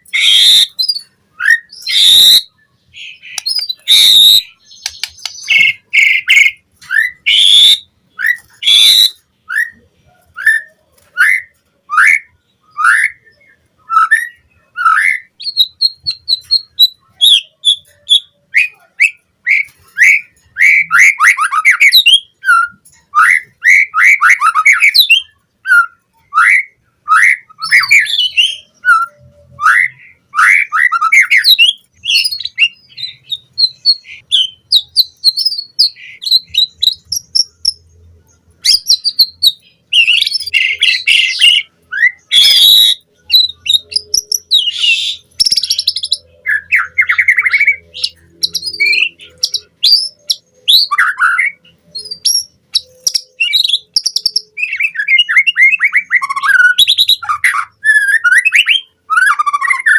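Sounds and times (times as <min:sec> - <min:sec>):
bird singing whistled notes: 0:00.0 - 0:09.8, 0:10.4 - 0:59.9.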